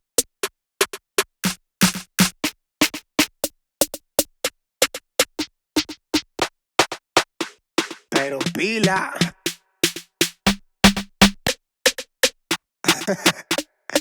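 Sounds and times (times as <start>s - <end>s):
electronic snare drum hits: 1.4s - 3.0s, 6.8s - 14.0s.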